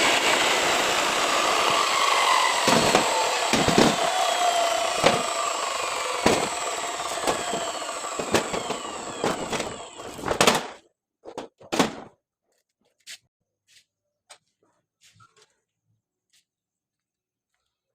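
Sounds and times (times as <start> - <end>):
power cutter cutting concrete: 0.0 - 10.2.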